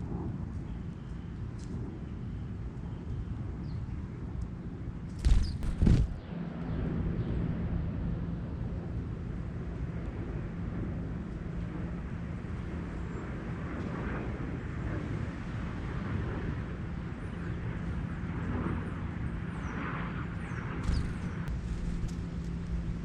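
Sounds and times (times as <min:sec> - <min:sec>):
faint constant hum: 0:00.0 - 0:23.0
distant engine rumble: 0:05.1 - 0:09.4, 0:20.4 - 0:23.0
bird chirps: 0:05.2 - 0:06.2, 0:20.8 - 0:21.3.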